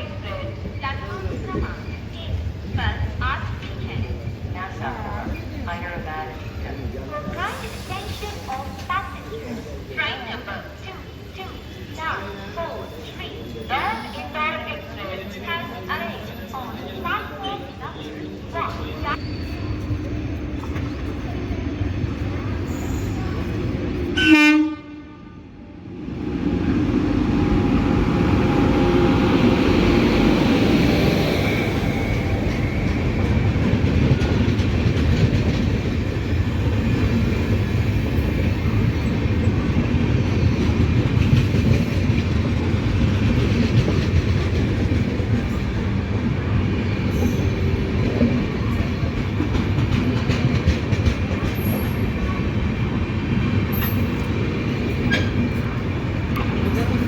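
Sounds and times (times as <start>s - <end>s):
train wheels rumbling: 25.7s - 57.0s.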